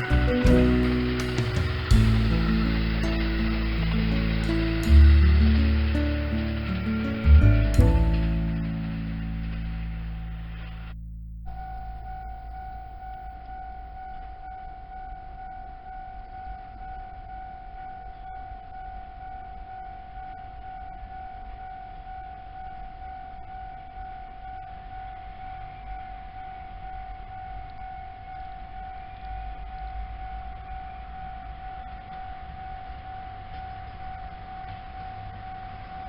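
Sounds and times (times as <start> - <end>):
level-crossing alarm ringing: 0.0 - 10.8
low rumble: 0.0 - 15.0.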